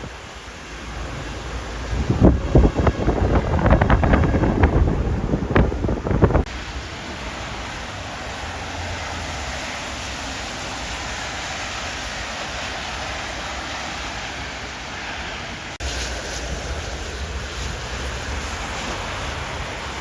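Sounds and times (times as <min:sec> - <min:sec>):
wind buffeting microphone: 0:00.0 - 0:11.8
storm rushing hiss: 0:00.0 - 0:20.0.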